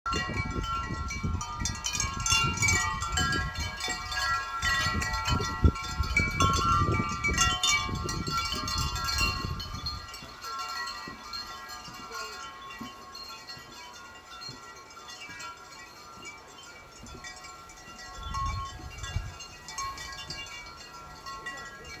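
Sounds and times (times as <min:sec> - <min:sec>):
wind rumble on microphone: 0:00.1 - 0:10.4, 0:18.0 - 0:22.0
wind chimes ringing: 0:00.1 - 0:22.0.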